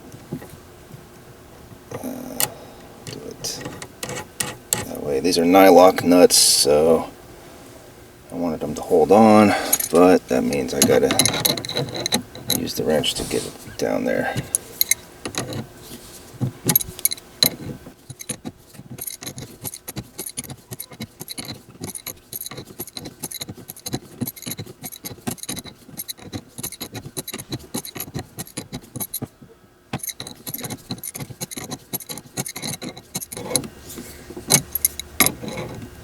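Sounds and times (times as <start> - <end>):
ratcheting wrench clicking: 9.7 - 12.8, 14.5 - 15.7, 16.7 - 29.3, 30.0 - 33.7, 34.5 - 35.8.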